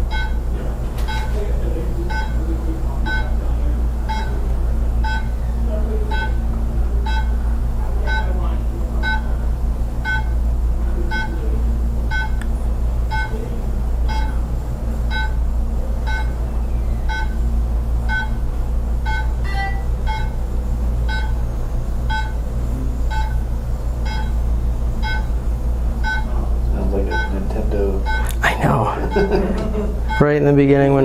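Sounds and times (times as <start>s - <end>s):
laser beeping: 0.0s - 1.4s, 2.0s - 3.4s, 4.0s - 6.4s, 7.0s - 7.4s, 8.0s - 8.4s, 9.0s - 9.4s, 10.0s - 10.4s, 11.1s - 11.4s, 12.1s - 12.4s, 13.1s - 14.4s, 15.1s - 15.4s, 16.0s - 21.5s, 22.1s - 22.4s, 23.1s - 25.4s, 26.0s - 31.0s
steady low hum: 0.0s - 31.0s.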